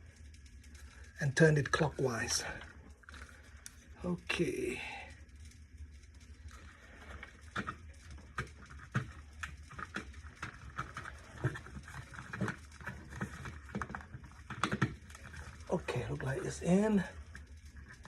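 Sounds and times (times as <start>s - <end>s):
low steady hum: 0.0s - 18.0s
plastic scraping and clicking: 6.4s - 16.2s.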